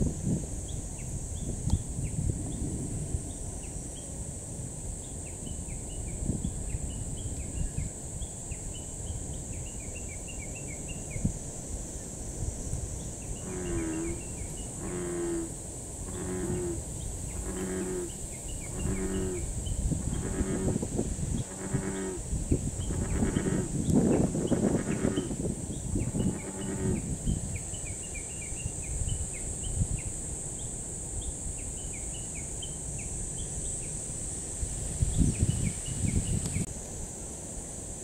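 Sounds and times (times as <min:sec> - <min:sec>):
high-pitched insect drone: 0:00.0 - 0:38.0
bullfrog calling: 0:13.4 - 0:16.8, 0:17.4 - 0:19.5, 0:20.1 - 0:20.8, 0:21.4 - 0:23.8, 0:24.5 - 0:25.4, 0:26.0 - 0:27.0.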